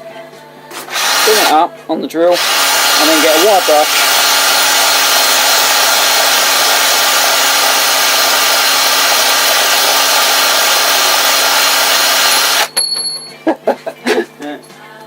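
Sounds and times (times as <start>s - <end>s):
electric drill whirring: 0.8s - 1.6s, 2.3s - 12.7s.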